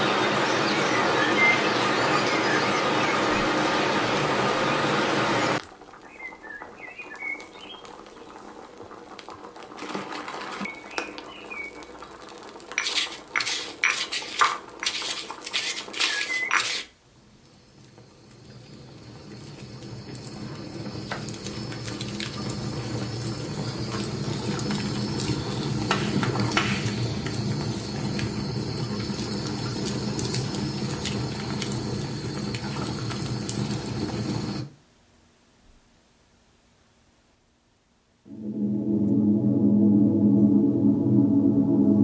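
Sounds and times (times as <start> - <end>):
rushing hissing ambient noise: 0.0 - 5.6, 38.3 - 42.0.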